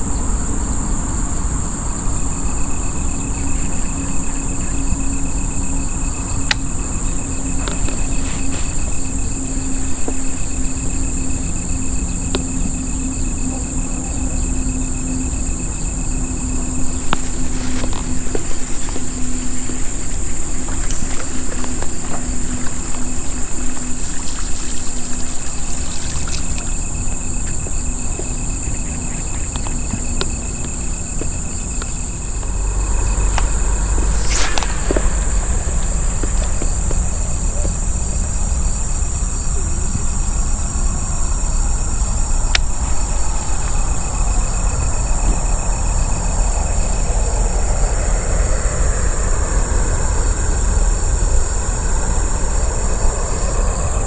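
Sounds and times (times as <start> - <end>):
insects trilling: 0.0 - 54.0
low rumble: 30.4 - 54.0.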